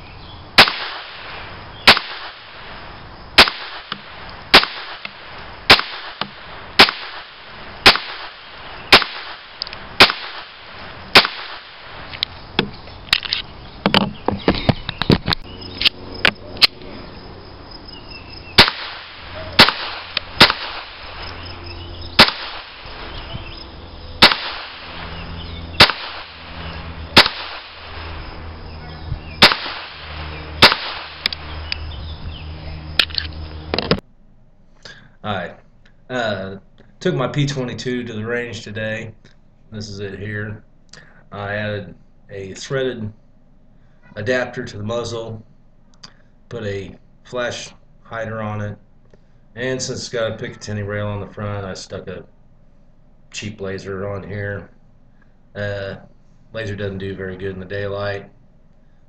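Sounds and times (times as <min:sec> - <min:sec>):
low steady hum: 0:00.0 - 0:59.0
pistol shots: 0:00.6 - 0:02.7, 0:03.4 - 0:12.0, 0:18.6 - 0:21.4, 0:22.2 - 0:23.3, 0:24.2 - 0:28.2, 0:29.4 - 0:31.5
quiet gun clicks: 0:11.2 - 0:14.0, 0:30.6 - 0:31.8.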